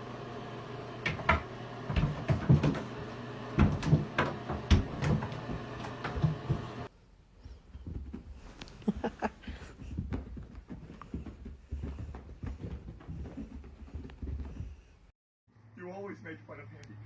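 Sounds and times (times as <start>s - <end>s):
irregular knocks and thumps: 1.0s - 6.8s, 7.4s - 15.1s.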